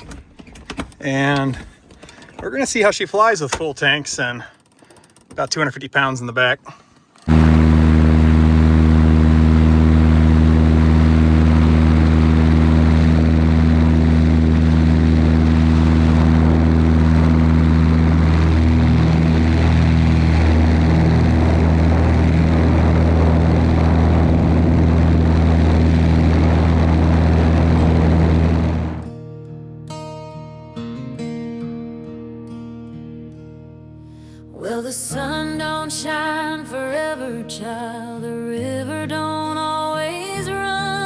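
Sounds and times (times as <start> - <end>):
propeller plane engine running: 6.6 - 29.1.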